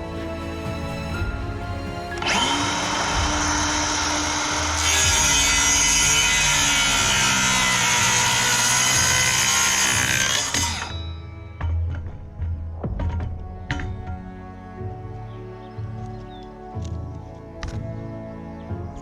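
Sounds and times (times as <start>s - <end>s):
power tool cutting wood: 2.1s - 11.1s.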